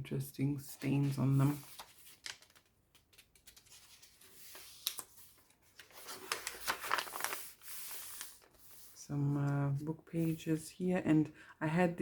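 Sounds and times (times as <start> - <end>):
paper pages rustling and crinkling: 0.6 - 9.6.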